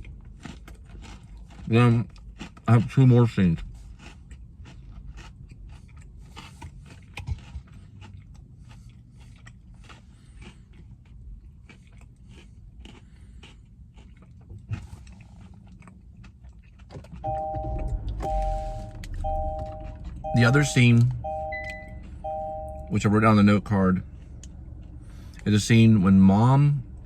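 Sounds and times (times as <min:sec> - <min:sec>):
crunchy candy chewing: 0:00.0 - 0:17.3.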